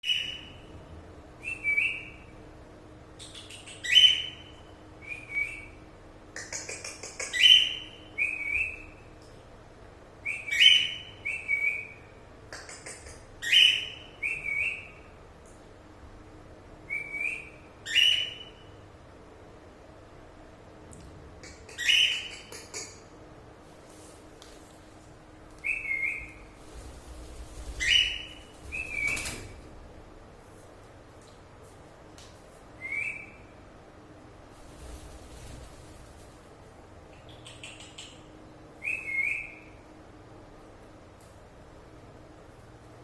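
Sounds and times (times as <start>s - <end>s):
cockatiels whistled chirps: 13.4s - 15.0s, 16.9s - 18.5s, 38.8s - 39.7s.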